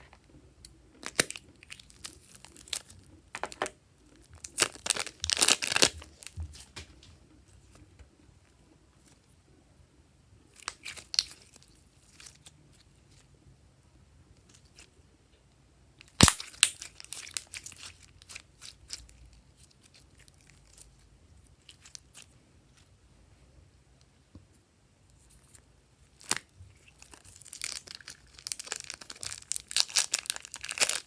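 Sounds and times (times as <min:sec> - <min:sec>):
slime crackling: 0:01.0 - 0:06.8, 0:26.1 - 0:31.0
slime snapping: 0:16.2 - 0:17.7.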